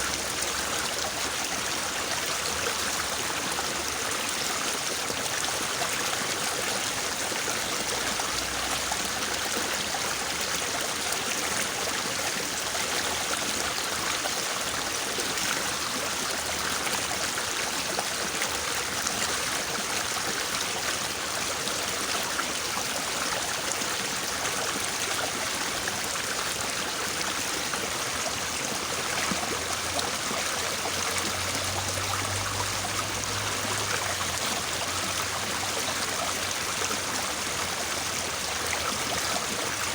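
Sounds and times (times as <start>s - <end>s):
river babbling: 0.0s - 39.9s.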